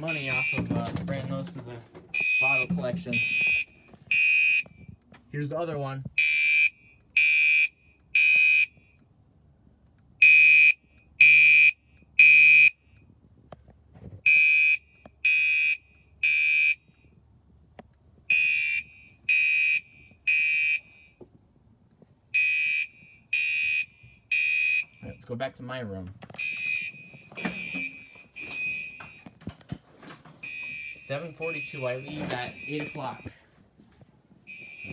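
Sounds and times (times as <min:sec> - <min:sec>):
fire alarm horn beeping: 0:00.0 - 0:01.0, 0:02.1 - 0:04.9, 0:06.2 - 0:08.9, 0:10.2 - 0:12.8, 0:14.2 - 0:16.9, 0:18.3 - 0:21.2, 0:22.3 - 0:25.2, 0:26.4 - 0:29.3, 0:30.4 - 0:33.4, 0:34.5 - 0:34.9.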